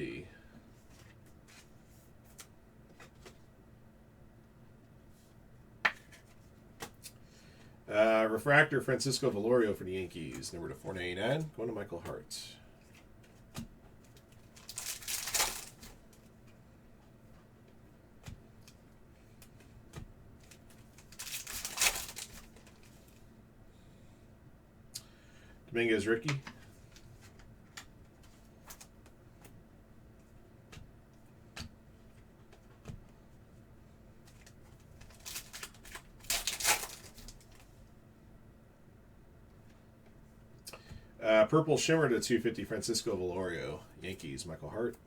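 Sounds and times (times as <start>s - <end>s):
card packs crinkling: 14.1s - 16.0s, 20.4s - 22.9s, 34.3s - 37.7s.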